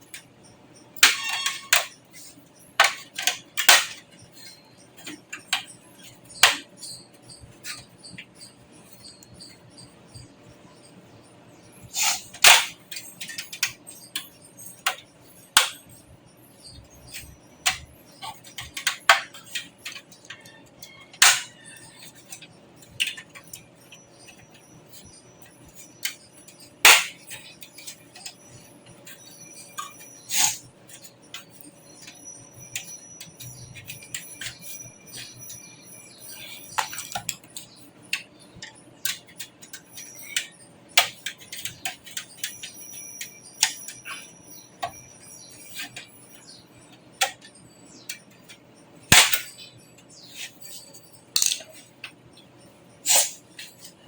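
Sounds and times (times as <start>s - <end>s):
parts clinking against metal case: 1.0s - 8.2s, 16.9s - 52.5s.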